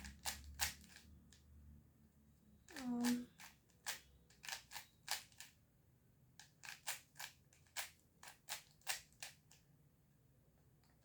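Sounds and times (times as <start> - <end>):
puzzle cube plastic clicks: 0.0 - 1.4, 2.7 - 5.6, 6.4 - 9.6.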